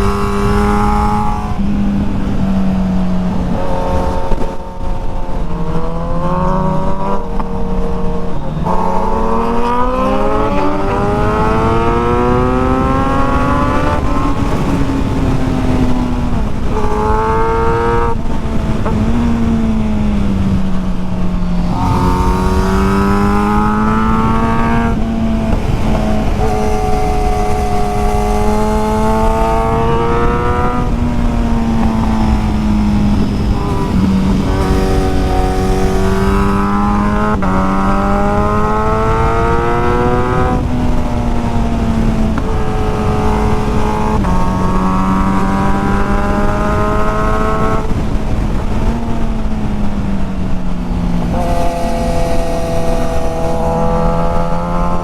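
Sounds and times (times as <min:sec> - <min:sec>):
motorcycle engine revving: 0:00.0 - 0:55.0
wind and road rush: 0:00.0 - 0:55.0.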